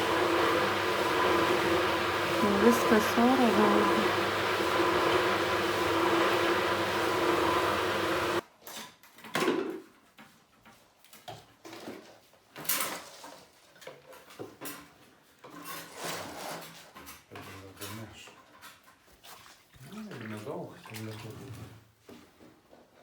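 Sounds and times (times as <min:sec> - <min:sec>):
water pump humming: 0:00.0 - 0:08.4.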